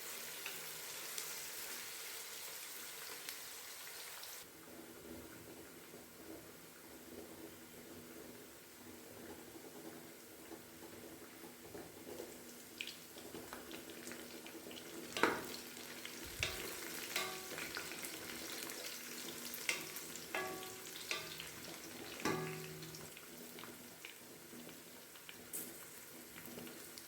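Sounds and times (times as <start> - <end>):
food sizzling in a pan: 0.0 - 4.5, 11.7 - 27.0
utensil clinking against pan: 16.3 - 18.2, 19.6 - 23.1.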